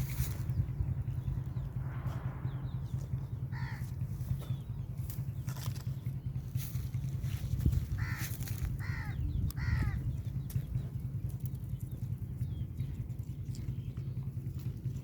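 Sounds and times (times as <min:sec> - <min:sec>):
bird calls: 0:00.0 - 0:15.0
low rumble: 0:00.0 - 0:15.0
goat chewing grass: 0:10.2 - 0:15.0.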